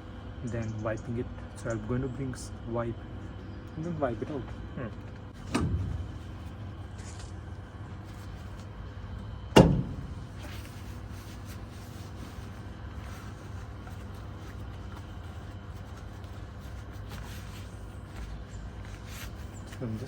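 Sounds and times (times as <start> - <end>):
steady low rumble: 0.0 - 20.0.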